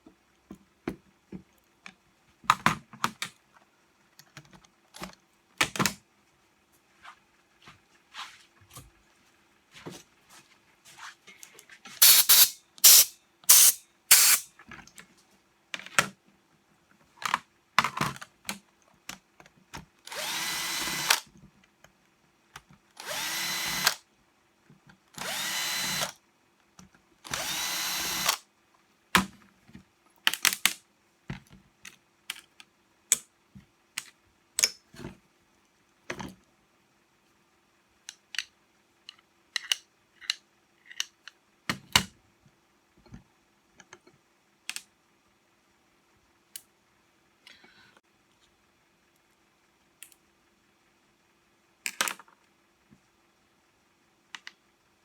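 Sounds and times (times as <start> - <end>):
cordless drill bursts: 12.0 - 14.4, 20.1 - 21.2, 23.0 - 24.0, 25.2 - 26.1, 27.3 - 28.4.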